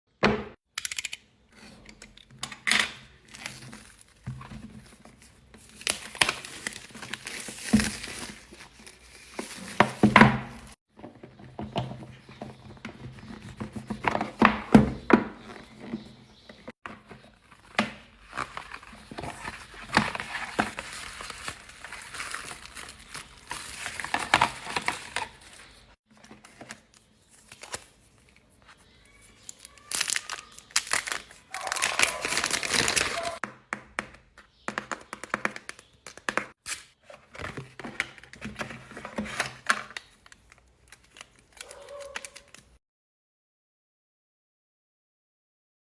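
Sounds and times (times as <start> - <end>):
plastic wrap and cardboard crinkling: 3.0 - 33.4, 34.8 - 42.8
packaging tearing: 17.5 - 25.8, 29.4 - 33.4, 39.3 - 42.7.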